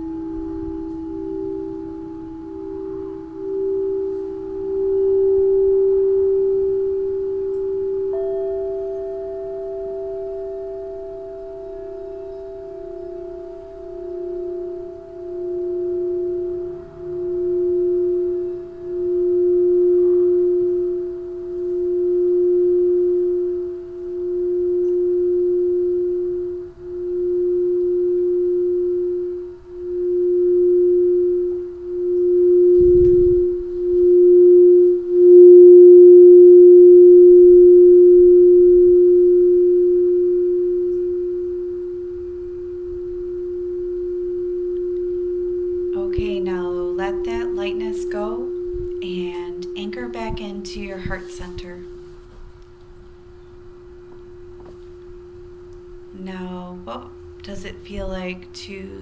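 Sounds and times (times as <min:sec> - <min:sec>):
singing bowl steady tone: 0:00.0 - 0:59.0
singing bowl struck ringing: 0:00.0 - 0:59.0
soft low thump: 0:32.7 - 0:34.0.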